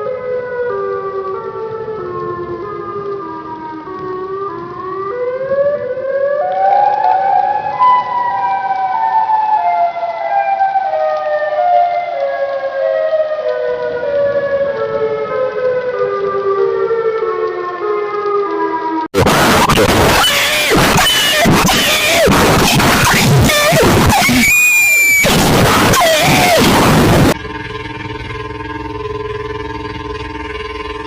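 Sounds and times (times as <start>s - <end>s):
siren wailing: 0.0s - 31.0s.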